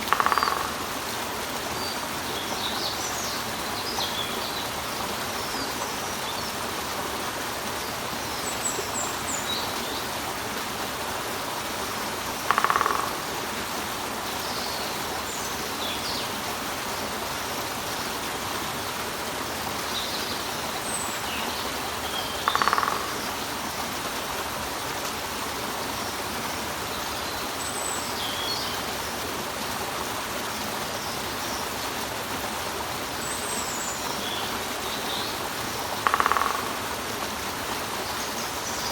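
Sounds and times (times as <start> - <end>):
woodpecker call: 0.0 - 0.8, 12.4 - 13.3, 22.2 - 23.4, 35.9 - 37.0
small birds chirping: 20.0 - 23.4.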